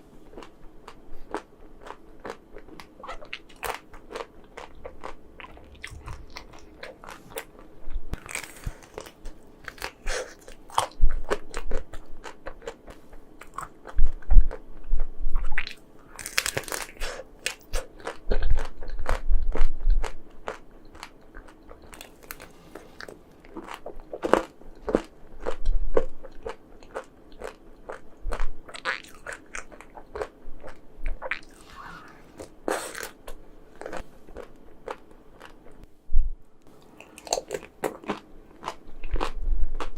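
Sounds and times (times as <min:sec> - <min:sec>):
quiet chewing: 0:00.2 - 0:35.9
crunching frozen ice cream: 0:15.6 - 0:31.6.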